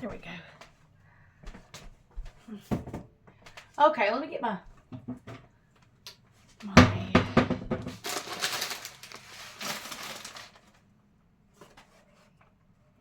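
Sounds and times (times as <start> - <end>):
items clattering in kitchen cabinet: 6.7 - 10.8.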